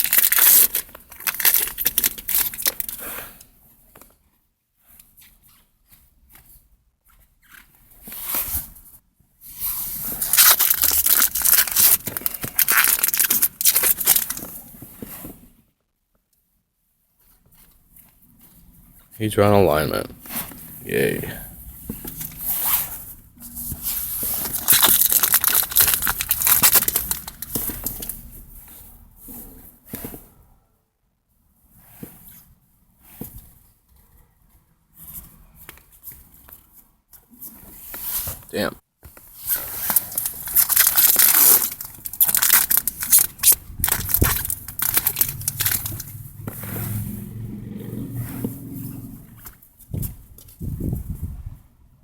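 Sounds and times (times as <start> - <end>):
foil wrapper crinkling: 0.0 - 3.0, 10.2 - 14.5, 24.1 - 28.2, 39.4 - 46.2.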